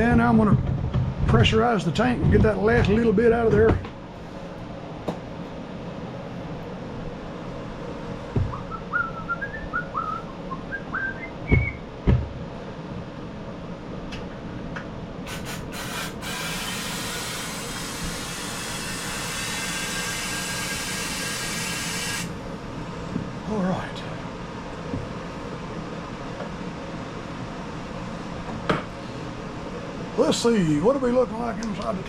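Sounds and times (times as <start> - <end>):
knocks: 8.3 - 8.6, 11.5 - 12.4
squeaky rising whistles: 8.5 - 11.8
compressed air hissing: 15.2 - 22.4.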